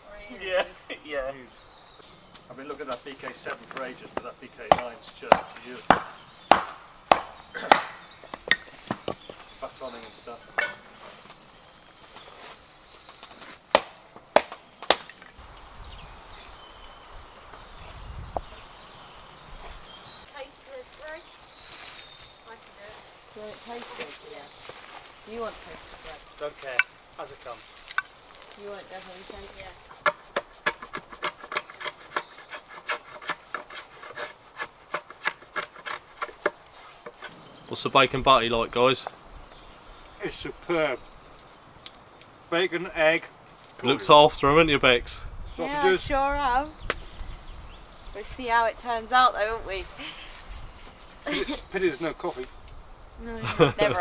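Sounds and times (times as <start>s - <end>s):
knife batoned into wood knocks: 4.7s - 9.1s
scraping rasping strokes: 27.9s - 37.6s, 39.3s - 41.6s.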